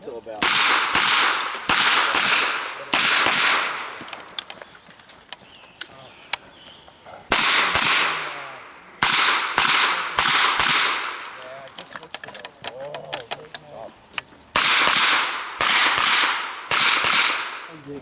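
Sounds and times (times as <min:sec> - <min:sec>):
revolver shots echoing: 0:00.4 - 0:04.0, 0:07.3 - 0:11.4, 0:14.6 - 0:17.7.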